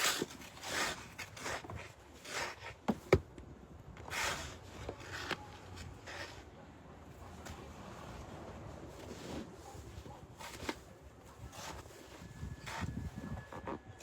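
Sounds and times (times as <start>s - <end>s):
snow shovel scraping snow: 0.0s - 2.8s, 4.1s - 5.4s, 8.9s - 13.7s.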